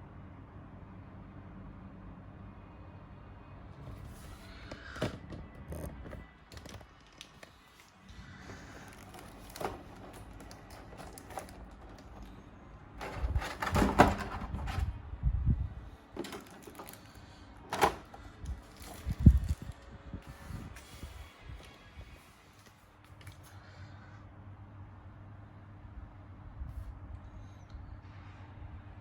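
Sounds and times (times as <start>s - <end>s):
plastic packaging rustling: 4.0s - 12.4s, 13.0s - 15.0s, 16.1s - 19.8s
plastic parts knocking: 8.8s - 12.3s, 13.0s - 14.9s, 16.2s - 17.1s, 17.7s - 18.2s.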